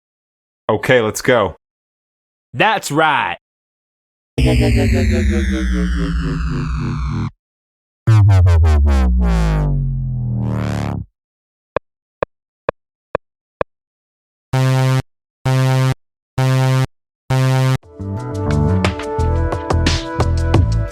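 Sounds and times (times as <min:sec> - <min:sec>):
low buzzer-like tone blasts: 0:04.4 - 0:07.3
tone gliding down: 0:04.4 - 0:07.3, 0:08.1 - 0:11.0
falling synth sweep: 0:04.4 - 0:07.4, 0:08.1 - 0:11.0
short synth blips: 0:04.4 - 0:07.4.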